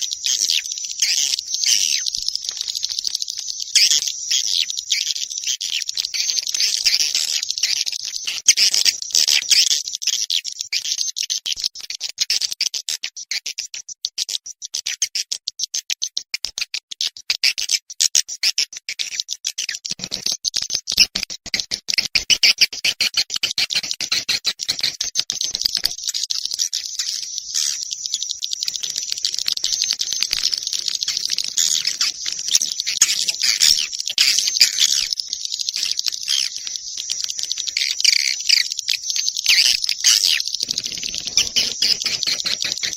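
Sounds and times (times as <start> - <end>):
swiftlet twittering: 26.0 - 42.9.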